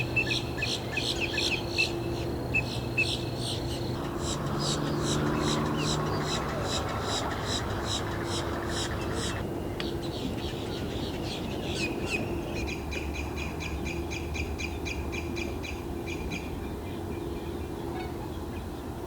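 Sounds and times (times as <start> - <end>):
wild birds calling: 2.6 - 16.3.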